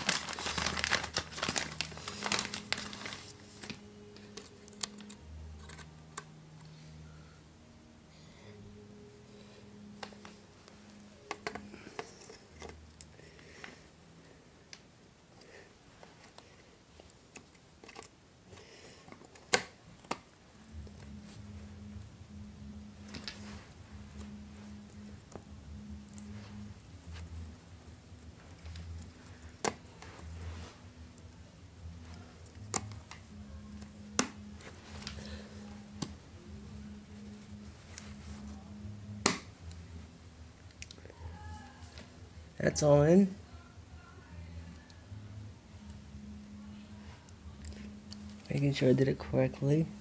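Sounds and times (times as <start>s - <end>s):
handling noise: 0.0s - 5.9s
low steady hum: 0.0s - 50.0s
steady low hum: 20.3s - 41.2s.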